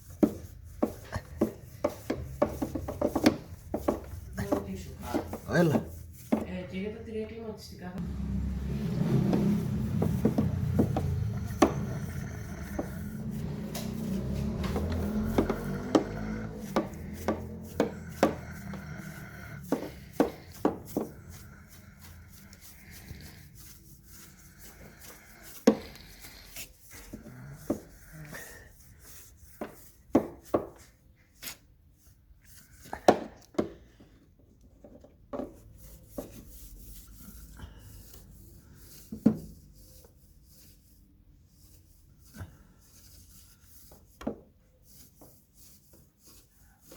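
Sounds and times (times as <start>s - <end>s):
low rumble: 8.0s - 11.8s.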